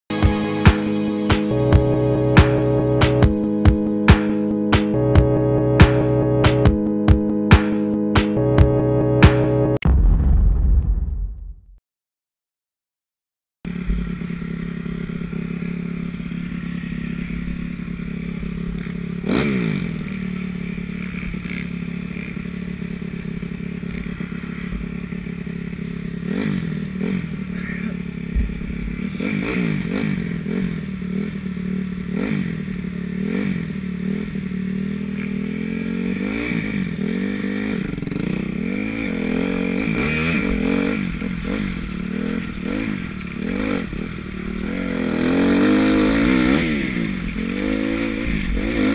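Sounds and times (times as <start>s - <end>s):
motorbike engine revving: 0.1s - 9.8s, 13.7s - 48.9s.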